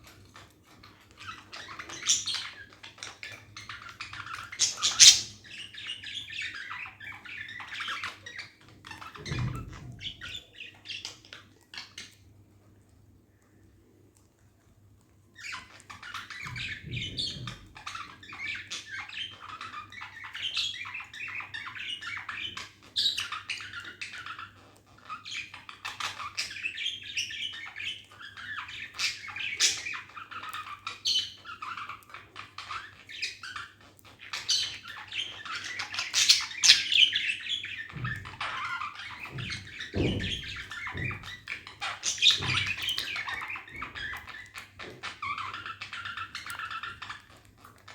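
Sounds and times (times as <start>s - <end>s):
budgerigars chattering: 1.6s - 2.6s, 4.1s - 8.0s, 34.3s - 47.2s.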